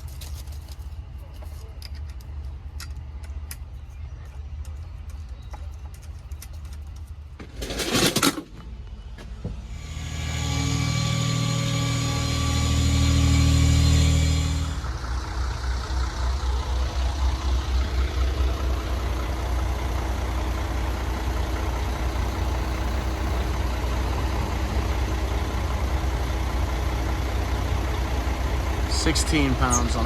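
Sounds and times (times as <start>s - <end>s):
truck engine idling: 8.5s - 30.0s.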